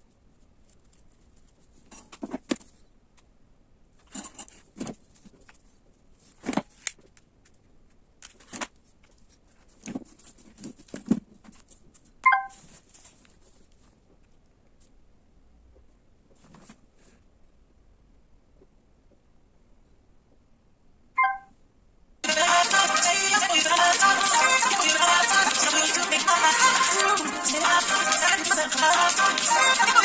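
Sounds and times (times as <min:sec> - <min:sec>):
short pitched beep: 0:12.2 - 0:12.6, 0:21.2 - 0:21.5.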